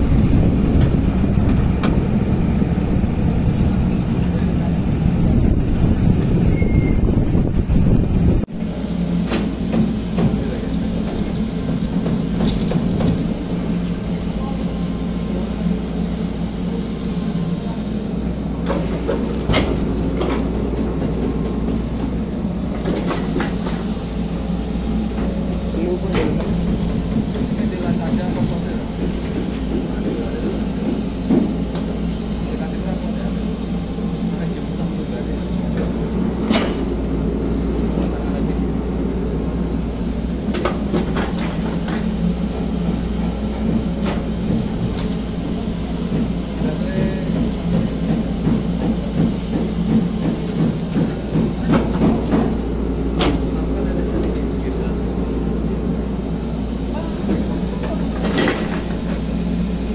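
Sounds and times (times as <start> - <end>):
excavator diesel engine digging: 0.0 - 59.9.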